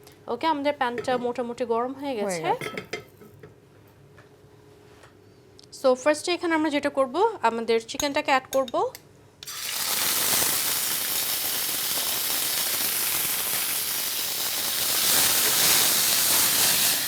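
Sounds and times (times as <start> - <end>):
chicken sizzling in a pan: 9.4 - 17.0.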